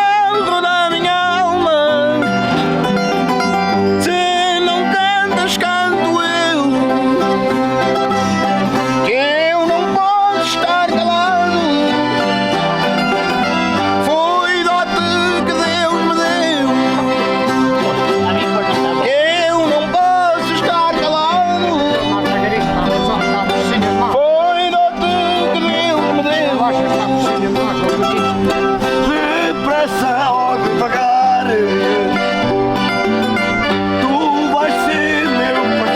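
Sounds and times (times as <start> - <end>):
accordion: 0.0 - 35.9
folk music on plucked strings: 0.0 - 35.9
people singing: 28.9 - 32.6, 34.0 - 35.9.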